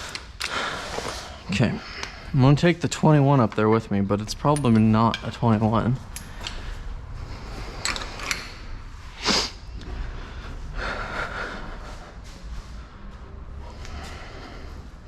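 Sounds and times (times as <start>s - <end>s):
soft breath: 6.2s - 15.0s
person snorting breath: 9.0s - 15.0s.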